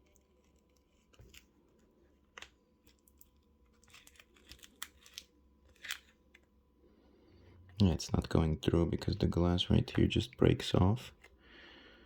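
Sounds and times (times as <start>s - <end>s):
pry card crackling through adhesive: 3.7s - 6.2s.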